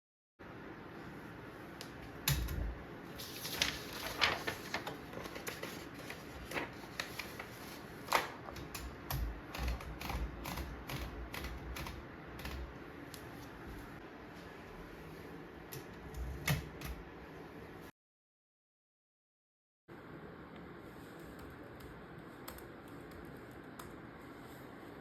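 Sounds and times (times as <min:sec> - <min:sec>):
typewriter keys clacking: 0:08.1 - 0:12.7.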